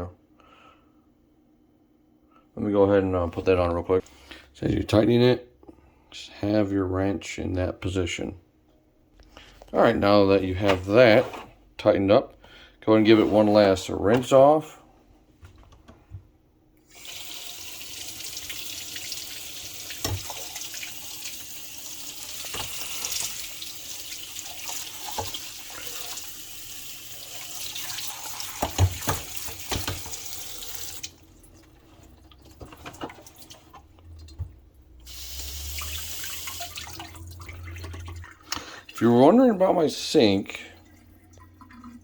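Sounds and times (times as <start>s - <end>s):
kitchen faucet running: 16.8s - 42.0s.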